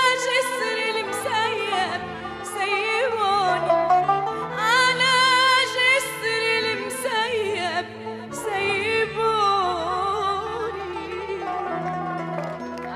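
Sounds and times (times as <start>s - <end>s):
instrumental accompaniment: 0.0s - 12.9s.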